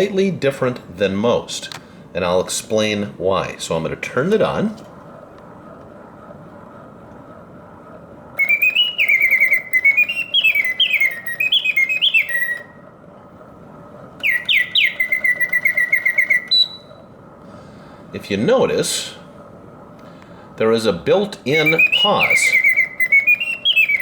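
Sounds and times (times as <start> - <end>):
faint steady hum: 0.0 - 24.0
mechanical bird whistle warbling: 8.4 - 12.9, 14.2 - 17.1, 21.5 - 24.0.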